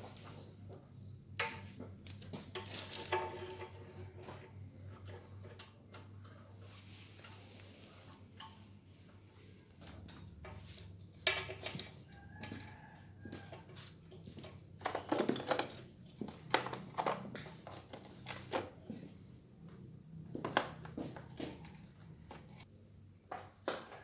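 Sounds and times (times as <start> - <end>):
metallic clinks and knocks: 1.3 - 4.4, 9.8 - 12.7, 14.8 - 17.9.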